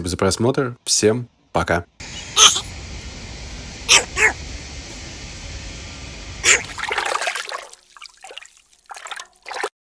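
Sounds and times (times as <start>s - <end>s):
steady background hiss: 0.0s - 6.8s
dog sneezing: 2.3s - 2.7s, 3.9s - 4.4s, 6.4s - 6.9s.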